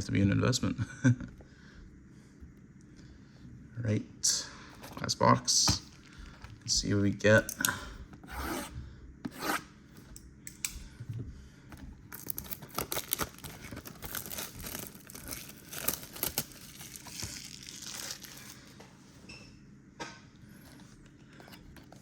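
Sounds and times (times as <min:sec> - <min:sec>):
plastic shrink wrap crinkling and tearing: 0:12.1 - 0:18.7.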